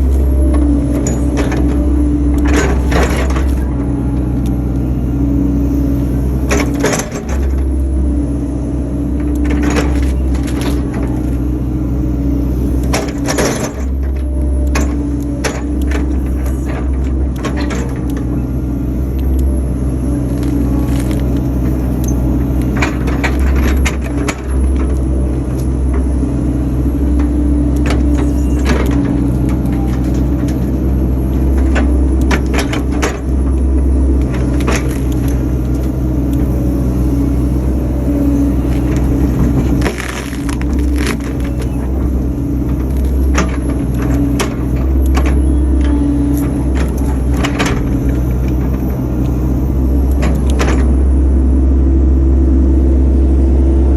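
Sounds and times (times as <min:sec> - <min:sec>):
excavator engine running: 0:00.0 - 0:53.9
bucket cracking tree stumps: 0:38.6 - 0:42.0.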